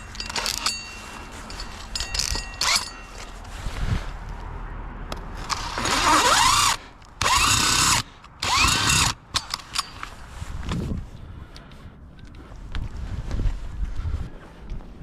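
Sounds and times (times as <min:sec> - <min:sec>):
power drill whining: 0:05.4 - 0:09.2.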